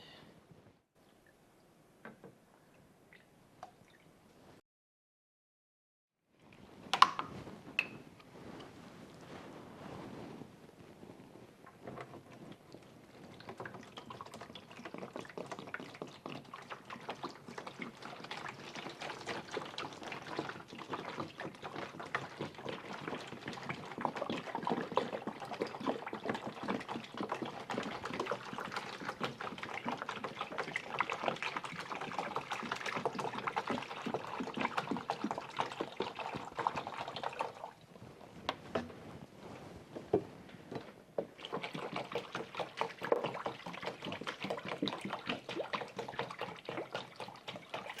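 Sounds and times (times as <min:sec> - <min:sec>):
liquid pouring into container: 0:13.2 - 0:38.0, 0:40.7 - 0:48.0.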